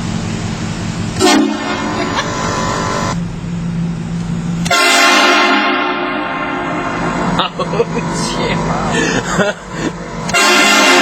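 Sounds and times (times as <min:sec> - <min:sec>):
steady low hum: 0:00.0 - 0:11.0
train horn blasts: 0:01.2 - 0:03.1, 0:04.6 - 0:07.4, 0:10.3 - 0:11.0.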